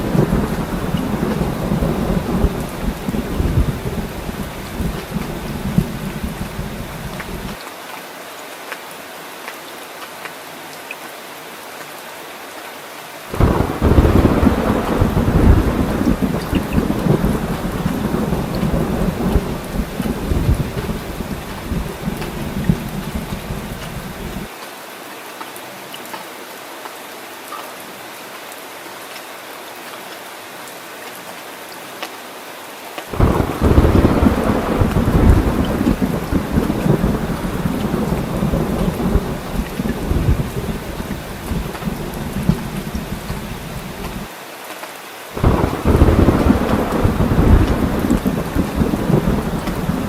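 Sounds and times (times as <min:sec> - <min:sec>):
rolling thunder rumble: 0:00.0 - 0:07.6, 0:13.3 - 0:24.5, 0:33.1 - 0:44.3, 0:45.4 - 0:50.0
steady rain hiss: 0:00.0 - 0:50.0.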